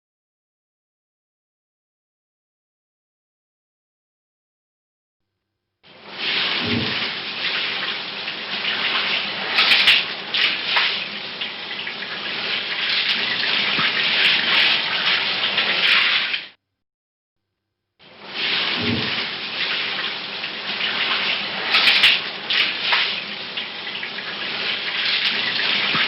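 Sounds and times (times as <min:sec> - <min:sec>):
shower water spraying: 0:05.9 - 0:16.6, 0:18.1 - 0:26.0.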